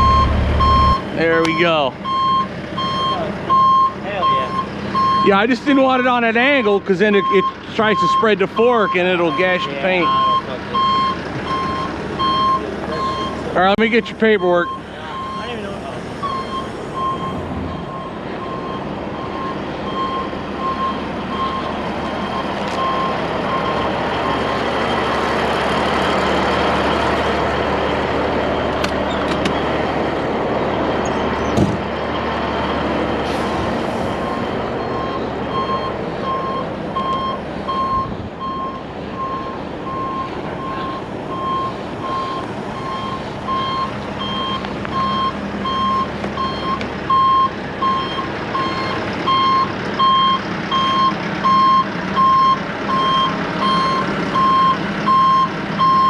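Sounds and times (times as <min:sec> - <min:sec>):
reversing alarm beeps: 0:00.0 - 0:01.0, 0:02.0 - 0:05.3, 0:07.2 - 0:13.4, 0:14.4 - 0:15.6, 0:16.2 - 0:24.5, 0:34.2 - 0:56.0
forklift engine running: 0:00.0 - 0:56.0.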